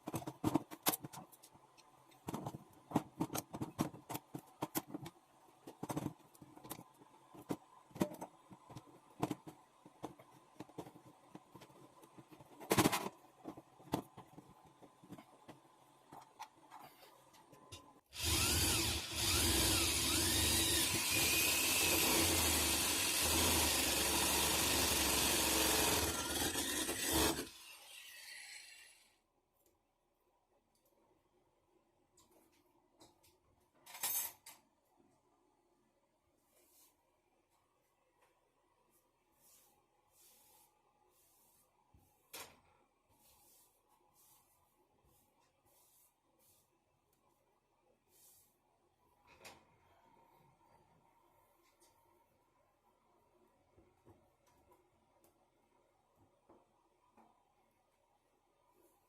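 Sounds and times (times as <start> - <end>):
power tool running: 18.2 - 27.6.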